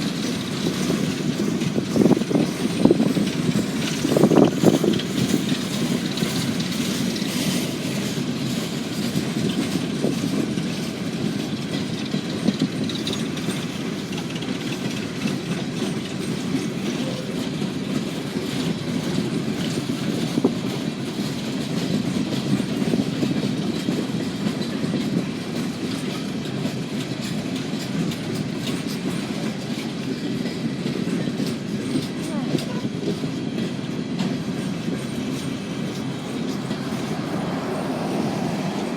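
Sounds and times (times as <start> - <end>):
freight train cars rolling past: 0.0 - 38.9
wheels clicking over rail joints: 0.0 - 38.9.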